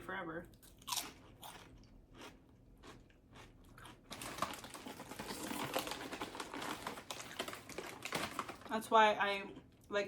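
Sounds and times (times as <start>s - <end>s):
person chewing crunchy food: 0.5s - 8.1s.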